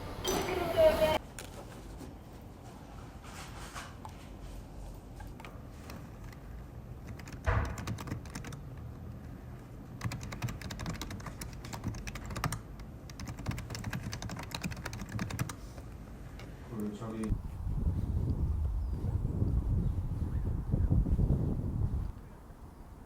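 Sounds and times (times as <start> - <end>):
keyboard key clicks: 7.0 - 8.6.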